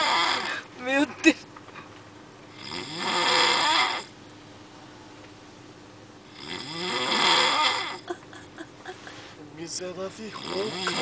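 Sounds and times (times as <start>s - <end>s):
man snoring: 0.0s - 0.6s, 2.5s - 4.1s, 6.3s - 8.1s, 10.3s - 11.0s.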